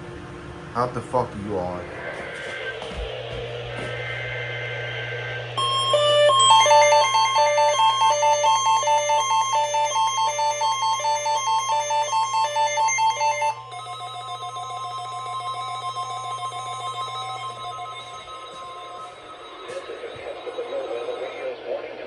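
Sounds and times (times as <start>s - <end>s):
steady low hum: 0.0s - 22.0s
electronic beeping melody: 5.6s - 21.5s.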